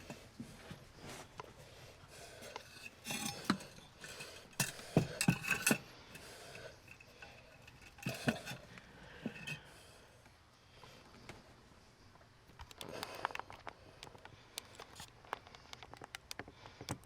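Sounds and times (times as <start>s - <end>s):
metal tools clinking: 2.4s - 9.6s.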